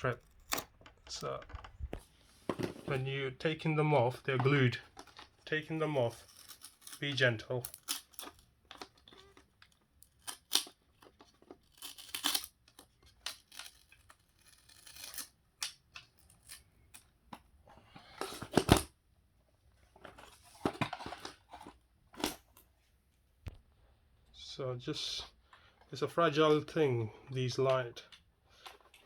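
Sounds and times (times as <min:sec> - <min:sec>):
plastic parts clicking: 0:00.0 - 0:02.7
light strip peeling off plastic: 0:07.7 - 0:17.0.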